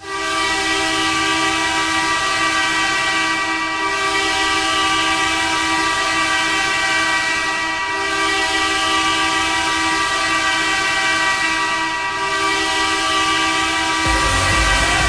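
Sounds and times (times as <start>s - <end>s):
goal horn blast: 13.7s - 15.0s.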